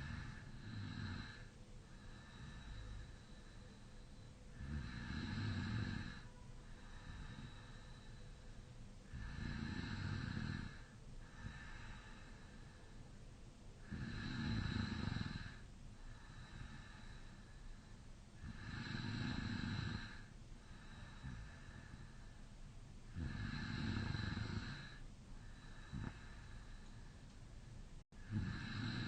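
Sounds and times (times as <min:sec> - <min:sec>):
man snoring: 0:00.0 - 0:01.5, 0:04.5 - 0:06.3, 0:09.1 - 0:12.2, 0:13.8 - 0:15.6, 0:18.4 - 0:22.0, 0:23.1 - 0:25.0, 0:25.6 - 0:26.6, 0:28.2 - 0:29.0
soft breathing: 0:00.0 - 0:29.0.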